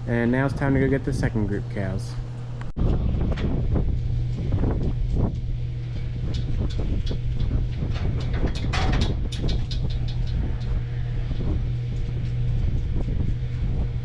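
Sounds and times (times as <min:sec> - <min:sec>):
motor hum: 0:00.0 - 0:14.0
rattles and clanks: 0:04.3 - 0:14.0.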